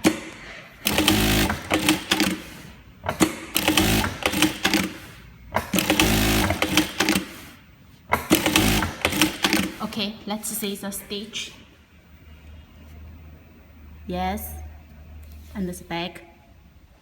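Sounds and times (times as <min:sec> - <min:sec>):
sewing machine sewing: 0:00.8 - 0:07.6, 0:08.2 - 0:10.0.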